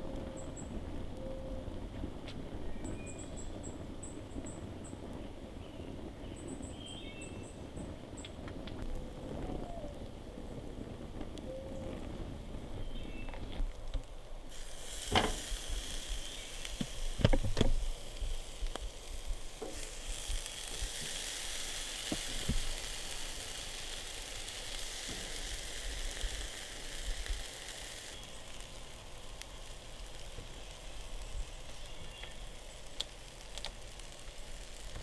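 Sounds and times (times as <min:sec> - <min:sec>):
steaks sizzling on a grill: 0:14.4 - 0:35.0.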